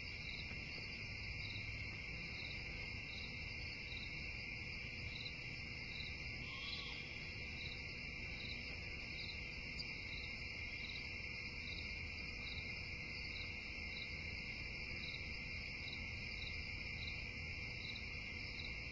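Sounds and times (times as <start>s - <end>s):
insect short chirp: 5.9s - 10.2s
insect high trill: 6.4s - 7.4s.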